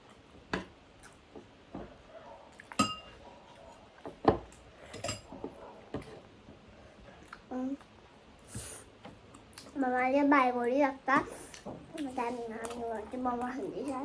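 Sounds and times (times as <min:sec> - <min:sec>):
cutlery clinking on plates: 0:02.7 - 0:03.2, 0:04.2 - 0:06.1.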